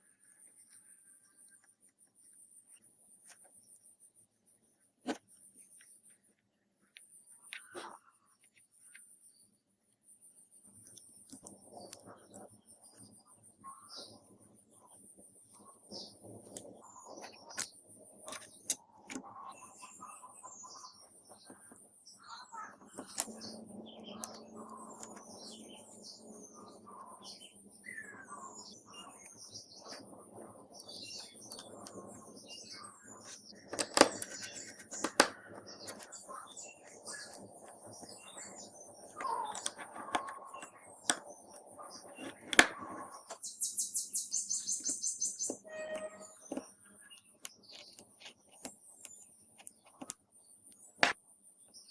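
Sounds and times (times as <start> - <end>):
small birds chirping: 0.0 - 51.9
sharp clicks and taps: 33.7 - 36.2.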